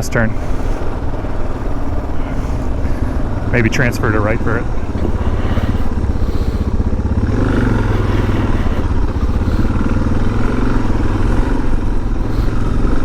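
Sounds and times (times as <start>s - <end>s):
motorcycle engine running: 0.0s - 13.0s.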